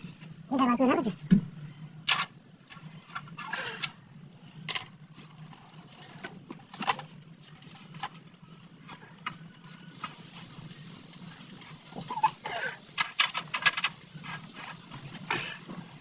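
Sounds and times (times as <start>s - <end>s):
steady hiss: 9.8s - 16.0s.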